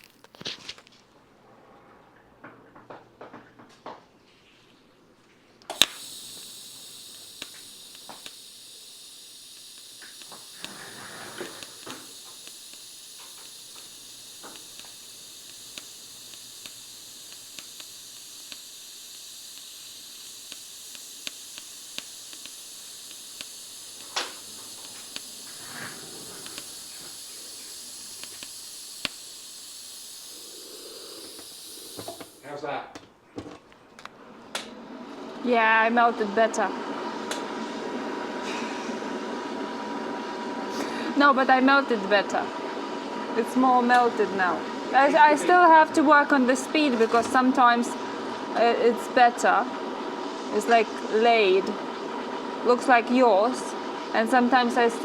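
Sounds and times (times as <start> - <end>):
welding arc hissing: 0.0 - 0.5, 5.6 - 32.8, 35.4 - 55.0
small ticks and pops: 5.6 - 32.4
welding arc striking crack: 5.6 - 32.5, 40.8 - 55.0.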